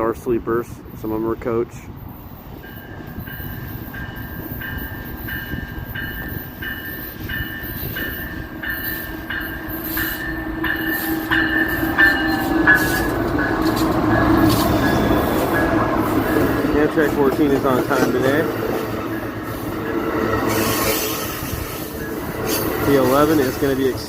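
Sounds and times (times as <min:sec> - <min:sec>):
train cars rumbling past: 0:00.0 - 0:24.0.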